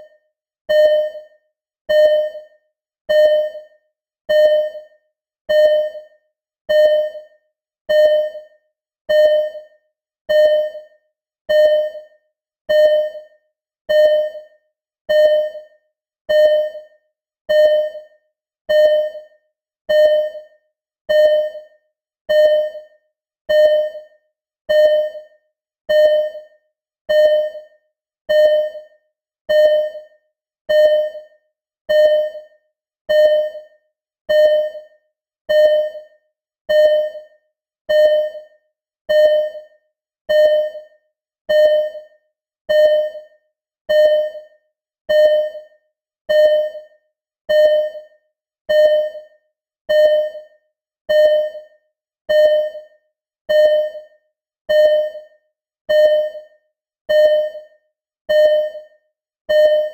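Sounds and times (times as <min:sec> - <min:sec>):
heart monitor beeping: 0:00.7 - 0:01.3, 0:01.9 - 0:02.5, 0:03.1 - 0:03.7, 0:04.3 - 0:04.9, 0:05.5 - 0:06.1, 0:06.7 - 0:07.3, 0:07.9 - 0:08.5, 0:09.1 - 0:09.7, 0:10.3 - 0:10.9, 0:11.5 - 0:12.1, 0:12.7 - 0:13.3, 0:13.9 - 0:14.5, 0:15.1 - 0:15.7, 0:16.3 - 0:16.9, 0:17.5 - 0:18.1, 0:18.7 - 0:19.3, 0:19.9 - 0:20.5, 0:21.1 - 0:21.7, 0:22.3 - 0:22.9, 0:23.5 - 0:24.1, 0:24.7 - 0:25.3, 0:25.9 - 0:26.5, 0:27.1 - 0:27.7, 0:28.3 - 0:28.9, 0:29.5 - 0:30.1, 0:30.7 - 0:31.3, 0:31.9 - 0:32.5, 0:33.1 - 0:33.7, 0:34.3 - 0:34.9, 0:35.5 - 0:36.1, 0:36.7 - 0:37.3, 0:37.9 - 0:38.5, 0:39.1 - 0:39.7, 0:40.3 - 0:40.9, 0:41.5 - 0:42.1, 0:42.7 - 0:43.3, 0:43.9 - 0:44.5, 0:45.1 - 0:51.7, 0:52.3 - 0:59.9.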